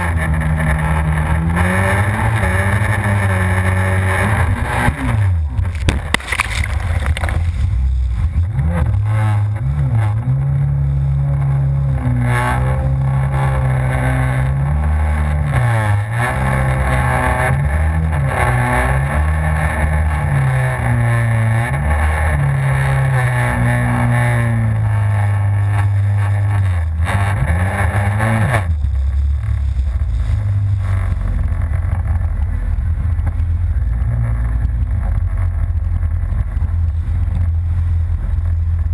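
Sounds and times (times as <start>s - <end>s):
jet ski engine revving: 0.0s - 38.9s.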